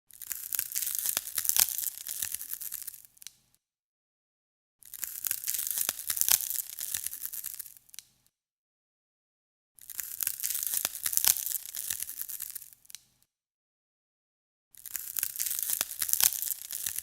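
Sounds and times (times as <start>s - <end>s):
ice cracking and crunching: 14.8s - 17.0s.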